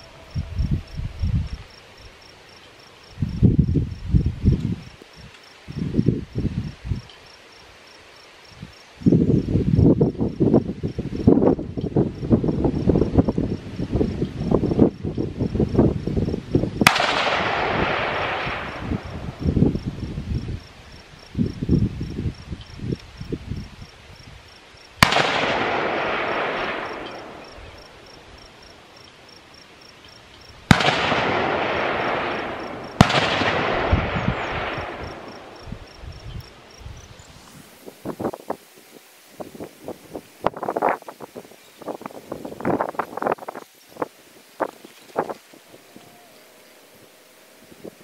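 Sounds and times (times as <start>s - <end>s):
wind buffeting microphone: 0.0s - 1.7s, 3.1s - 7.1s, 8.6s - 28.6s, 30.6s - 46.4s
rifle shots with echo: 16.8s - 19.3s, 25.0s - 27.9s, 30.7s - 35.6s.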